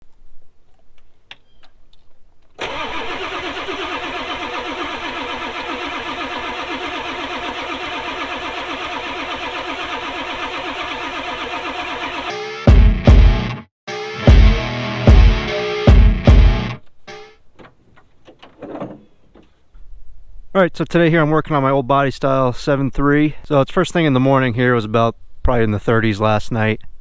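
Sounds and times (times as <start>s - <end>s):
diesel engine cranking: 2.6s - 12.4s.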